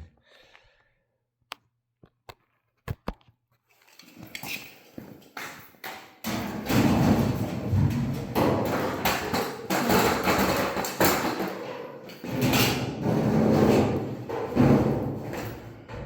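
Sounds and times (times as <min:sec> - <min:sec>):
sheet-metal ductwork knocking and scraping: 0:05.9 - 0:16.0.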